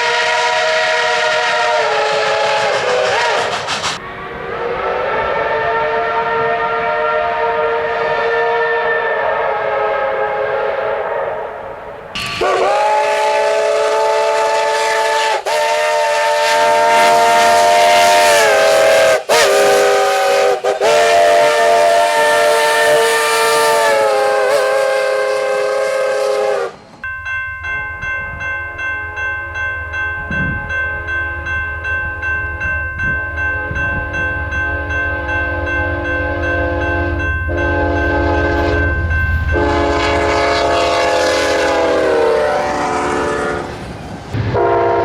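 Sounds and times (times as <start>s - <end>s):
steam locomotive chime whistle: 0.0s - 43.8s, 44.4s - 45.0s
hiss of steam: 2.3s - 4.0s.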